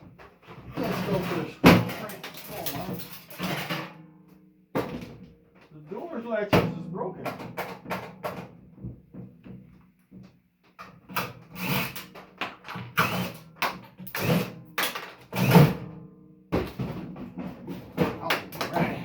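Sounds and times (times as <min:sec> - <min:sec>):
metal knocks and clanks: 0:00.0 - 0:04.0, 0:04.7 - 0:19.0.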